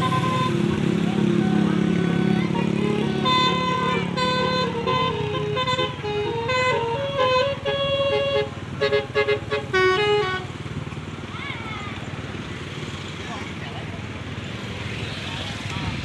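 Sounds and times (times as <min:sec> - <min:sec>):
bus multi-tone horn melody: 0:00.0 - 0:10.7
bus engine rumble: 0:00.0 - 0:16.0.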